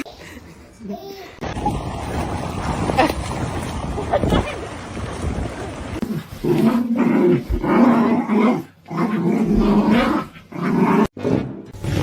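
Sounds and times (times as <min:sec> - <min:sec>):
dog growling: 0:06.0 - 0:11.1.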